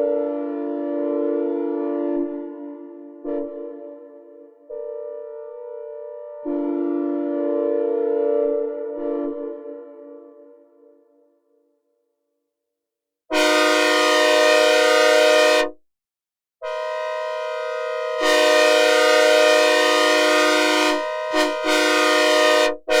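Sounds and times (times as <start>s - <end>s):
locomotive air horn chord: 3.2s - 10.6s, 13.3s - 15.8s, 16.6s - 23.0s.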